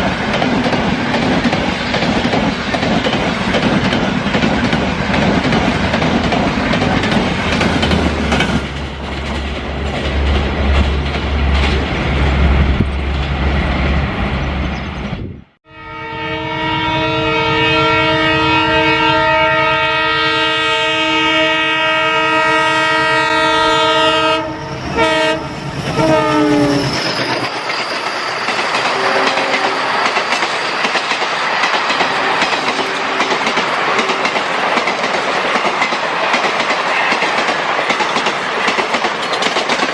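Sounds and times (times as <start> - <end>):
wheels clickety-clack: 0.0 - 11.9, 27.1 - 39.9
train running over track: 0.0 - 39.9
locomotive air horn: 15.7 - 27.4, 28.9 - 30.0, 32.0 - 34.2.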